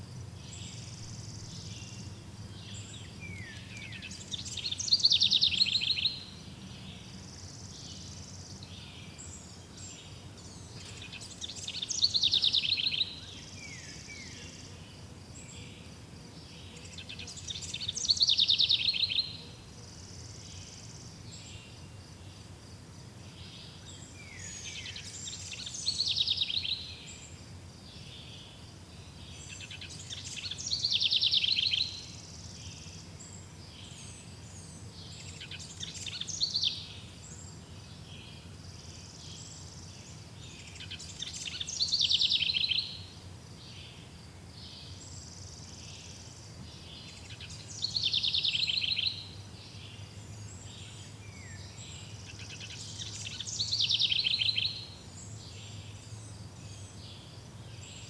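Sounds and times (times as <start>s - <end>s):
insects chirring: 0.0s - 58.0s
songbird trilling: 0.5s - 6.3s, 16.9s - 19.4s, 29.4s - 32.8s, 40.6s - 43.1s, 47.0s - 49.3s, 50.8s - 55.9s.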